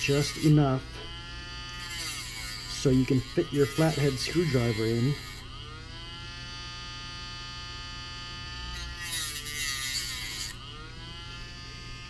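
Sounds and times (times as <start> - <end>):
rotary tool grinding plastic: 0.0 - 6.2, 8.6 - 11.5
rotary tool whining: 0.0 - 12.0.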